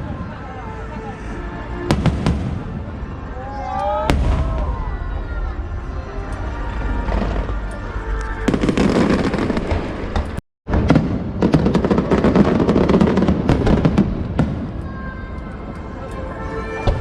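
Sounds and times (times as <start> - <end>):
fireworks crackling and popping: 1.9 - 15.0.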